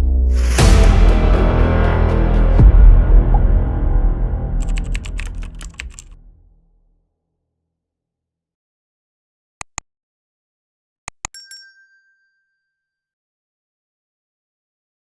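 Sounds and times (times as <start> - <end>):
sharp clicks: 4.6 - 6.2.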